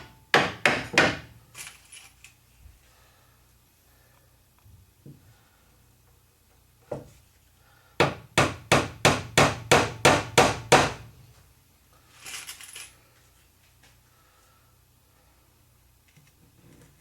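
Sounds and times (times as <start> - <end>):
hammer strikes: 0.0 - 1.4, 8.0 - 11.1.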